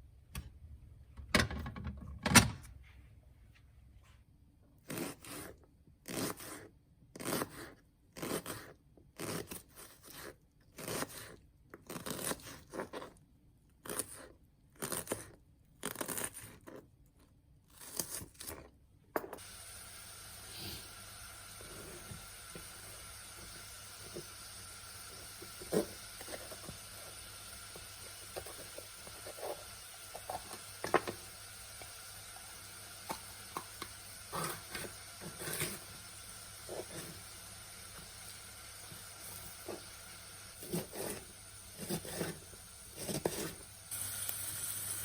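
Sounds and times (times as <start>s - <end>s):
faint steady hiss: 19.2s - 45.0s.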